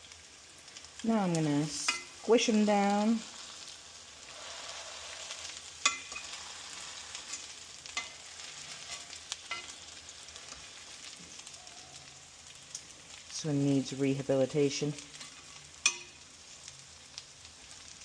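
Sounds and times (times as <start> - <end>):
patties sizzling in oil: 0.0 - 18.0
sharp clicks against a pan: 15.8 - 16.1.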